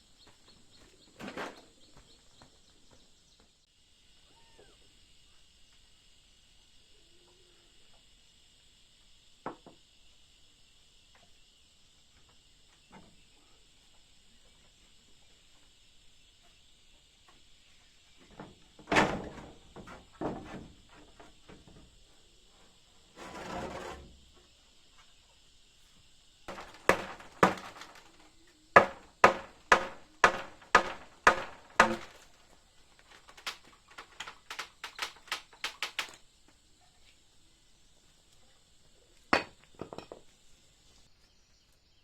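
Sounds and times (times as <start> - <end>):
scraping: 23.1 - 24.3, 26.5 - 34.6
hammer striking nails into wood: 26.5 - 28.2, 28.8 - 32.3.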